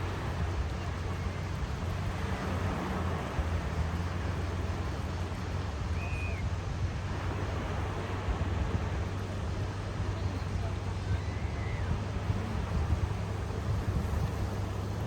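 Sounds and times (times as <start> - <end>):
wind on microphone rumble: 0.0 - 15.0
sea waves washing: 11.9 - 15.0.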